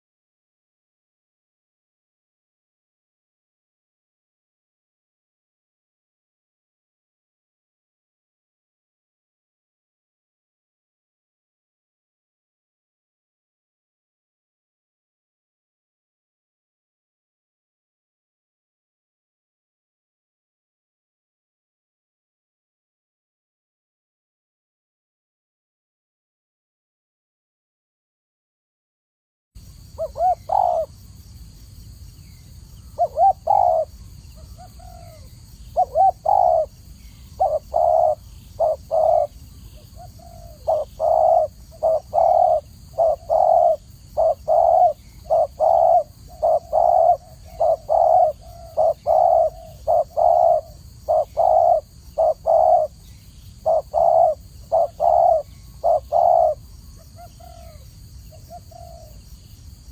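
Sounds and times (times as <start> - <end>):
dove cooing: 29.9 - 31.0, 32.8 - 59.2.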